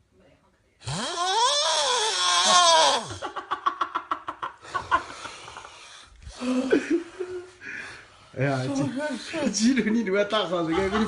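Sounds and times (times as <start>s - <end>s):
person snoring loudly: 0.8s - 3.2s.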